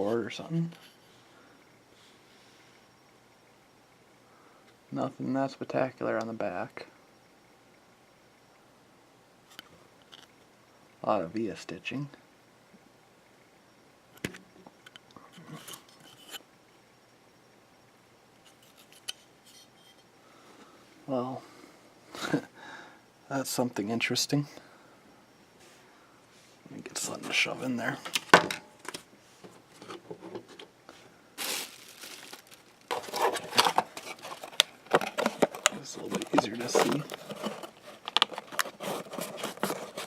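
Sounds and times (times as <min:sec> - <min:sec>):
small tool clicks and scrapes: 0:18.4 - 0:20.0
hands handling plastic housing: 0:31.4 - 0:40.0.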